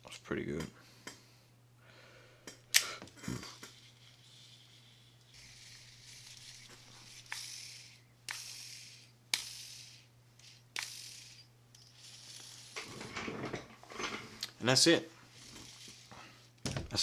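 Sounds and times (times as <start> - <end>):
steady low hum: 0.0 - 17.0
fishing reel clicks: 3.6 - 12.8
fishing reel whir: 3.6 - 12.9, 15.3 - 16.1.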